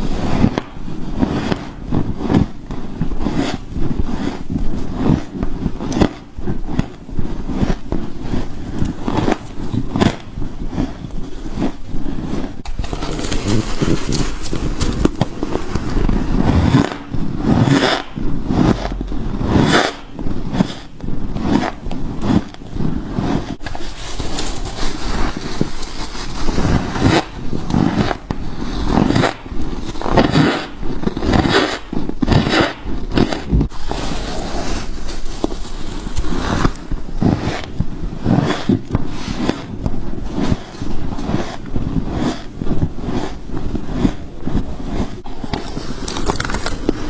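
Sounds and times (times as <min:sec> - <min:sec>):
frost crunching between teeth: 0:45.4 - 0:47.0.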